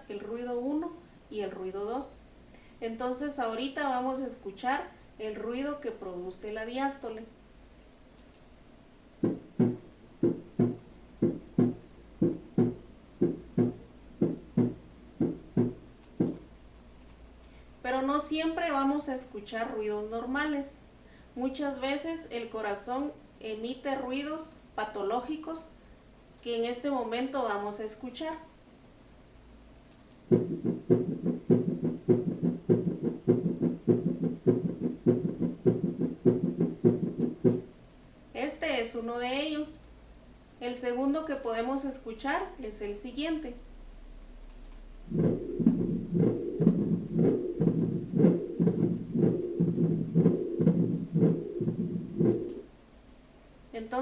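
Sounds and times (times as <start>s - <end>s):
heartbeat lub-dub: 9.2s - 16.6s, 30.3s - 37.7s, 45.0s - 52.8s.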